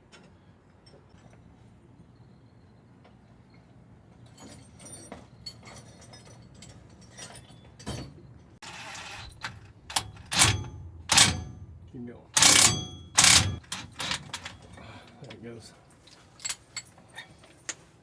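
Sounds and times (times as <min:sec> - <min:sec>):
metal tools clinking and knocking: 0:04.3 - 0:15.0, 0:16.0 - 0:17.8
loud sharp knocks: 0:09.9 - 0:14.2.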